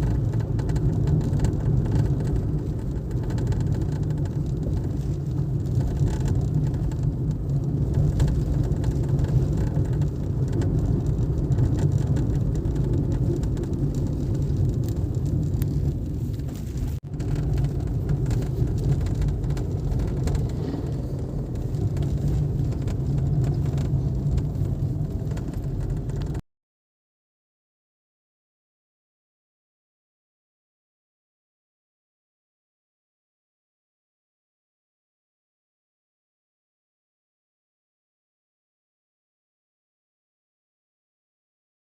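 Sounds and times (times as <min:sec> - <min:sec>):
car cabin low rumble: 0:00.0 - 0:26.4.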